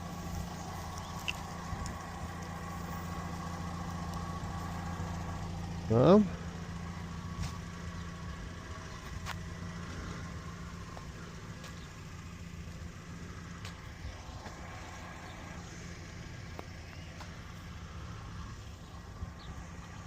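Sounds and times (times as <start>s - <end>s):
car engine idling: 0.0s - 20.0s
faint clicks: 0.8s - 2.6s.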